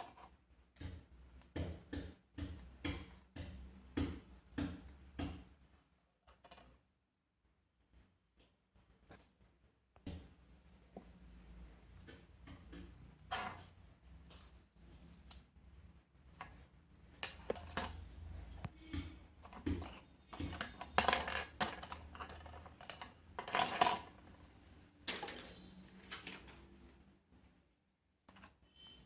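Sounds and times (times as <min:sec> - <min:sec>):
small hard objects clattering: 0:19.4 - 0:24.3.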